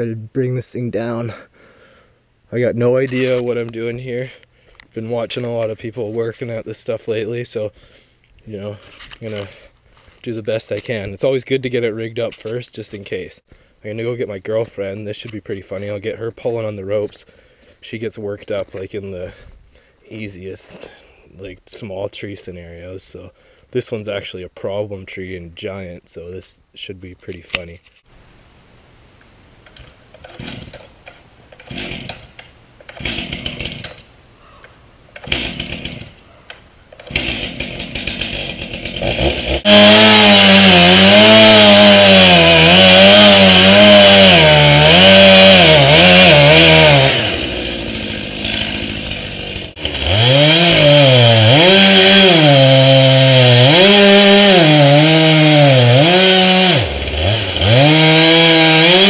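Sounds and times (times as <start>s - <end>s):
chainsaw cutting wood: 29.8s - 30.9s, 31.5s - 34.1s, 35.2s - 36.2s, 36.9s - 59.0s.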